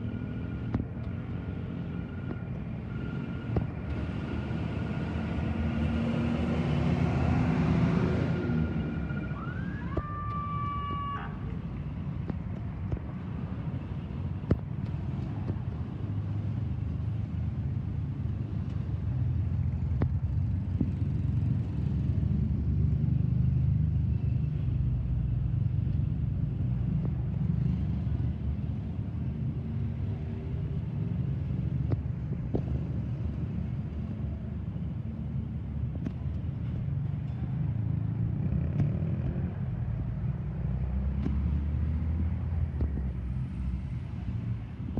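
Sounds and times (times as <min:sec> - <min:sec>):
road traffic rumble: 0:00.0 - 0:44.9
siren whoop: 0:08.4 - 0:11.4.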